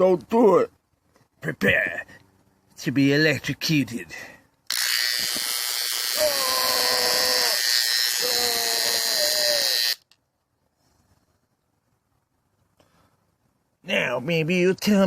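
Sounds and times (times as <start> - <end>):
electric hair clippers buzzing: 4.7 - 10.0
man crying out: 6.1 - 9.9.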